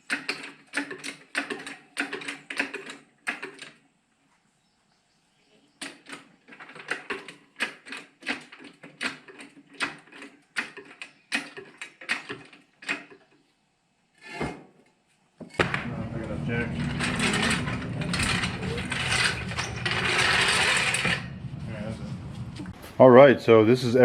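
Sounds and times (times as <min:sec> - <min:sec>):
short rushing swell: 0:15.8 - 0:23.6.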